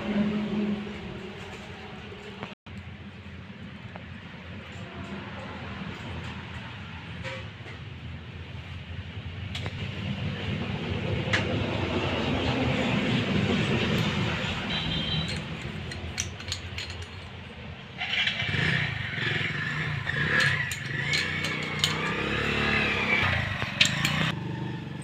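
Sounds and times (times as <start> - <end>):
engine running: 9.5 - 25.0
metallic clicks and clinks: 13.8 - 17.7, 19.8 - 24.4.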